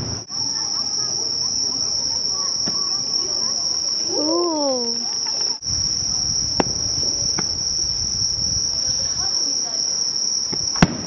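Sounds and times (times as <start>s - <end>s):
distant firework bangs: 0.0s - 0.5s, 1.4s - 3.5s, 5.6s - 7.9s, 10.5s - 11.0s
insects chirring: 0.0s - 11.0s.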